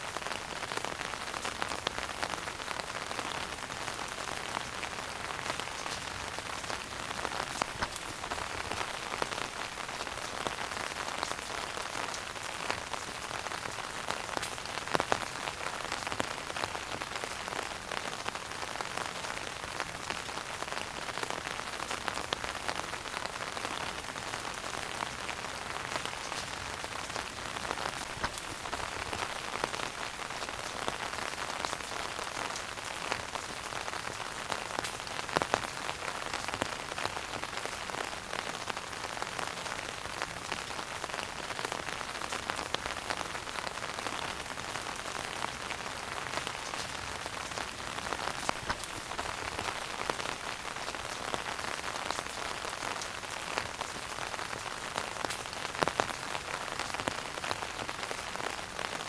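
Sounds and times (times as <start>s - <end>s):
wood fire crackling: 3.6s - 15.2s, 25.3s - 37.9s, 45.8s - 57.1s
wood fire popping: 48.4s - 49.9s.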